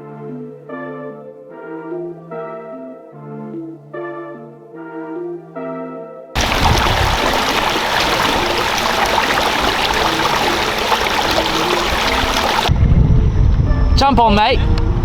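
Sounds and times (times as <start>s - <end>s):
flowing water rushing: 6.4s - 12.7s.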